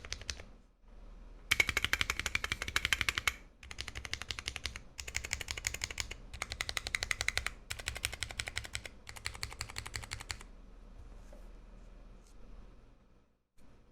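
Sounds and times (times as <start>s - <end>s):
mechanical keyboard typing: 0.0s - 0.5s, 1.5s - 10.5s.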